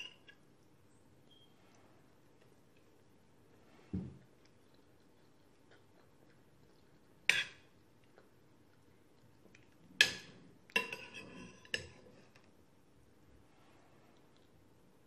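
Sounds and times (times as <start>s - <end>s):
utensil clinking against a dish: 7.2s - 7.7s, 10.0s - 12.4s.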